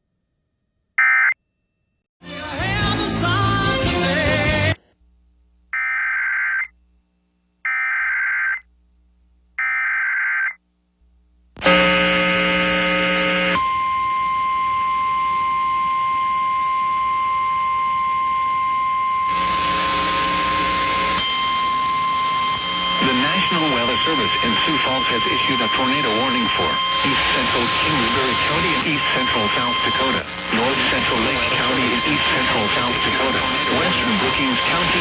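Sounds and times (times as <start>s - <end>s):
loud steady alert tone: 19.2s - 35.0s
digital data tone bursts: 20.5s - 35.0s.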